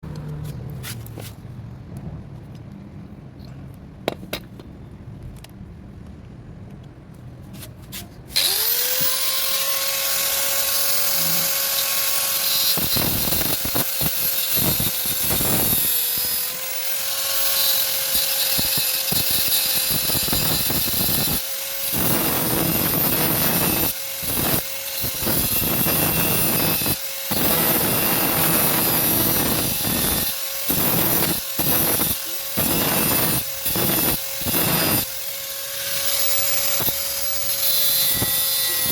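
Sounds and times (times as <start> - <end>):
power tool grinding metal: 8.3 - 38.9.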